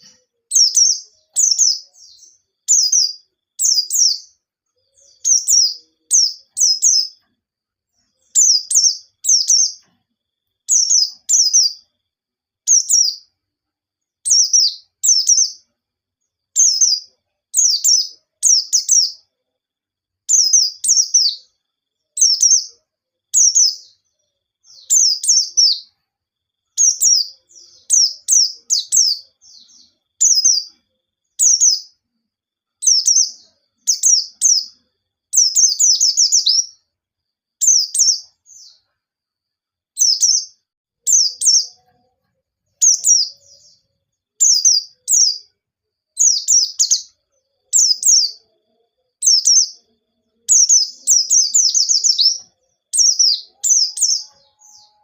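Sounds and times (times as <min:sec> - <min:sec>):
bird chirping in rapid bursts: 0:00.0 - 0:07.3, 0:08.0 - 0:09.9, 0:10.7 - 0:11.9, 0:12.7 - 0:13.3, 0:14.2 - 0:15.7, 0:16.5 - 0:19.3, 0:20.3 - 0:21.6, 0:22.2 - 0:26.0, 0:26.7 - 0:30.8, 0:31.4 - 0:32.0, 0:32.8 - 0:36.9, 0:37.6 - 0:38.9, 0:40.0 - 0:41.8, 0:42.7 - 0:45.5, 0:46.2 - 0:48.4, 0:49.2 - 0:55.0.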